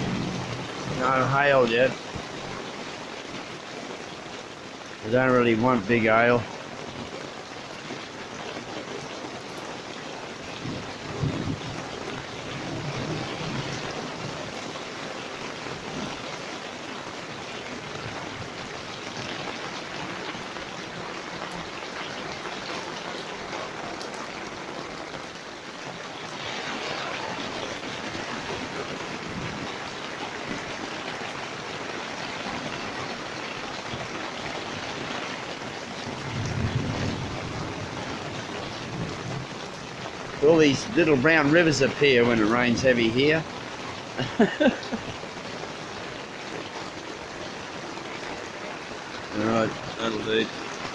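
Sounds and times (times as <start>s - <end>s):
thunder rumble: 0.0s - 2.6s, 10.5s - 14.6s, 35.9s - 43.1s
heavy rain falling: 0.0s - 50.9s.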